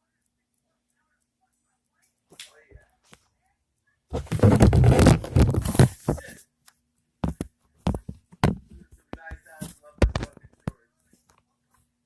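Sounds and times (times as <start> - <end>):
sharp clicks and pops: 10.0 - 10.8.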